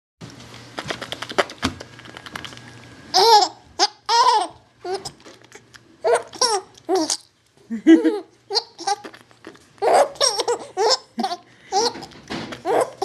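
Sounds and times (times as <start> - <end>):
baby laughing in squeals: 3.2 - 5.2, 6.0 - 7.2, 9.8 - 13.0.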